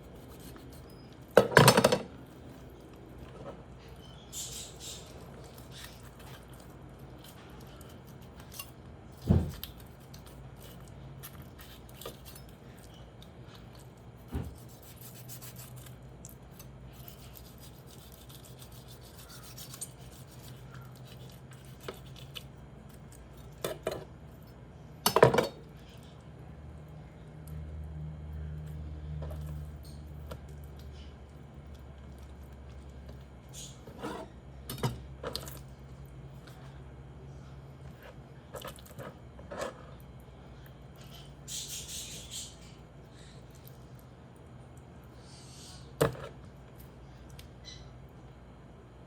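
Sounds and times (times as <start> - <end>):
knife cutting raw chicken: 16.6 - 22.5.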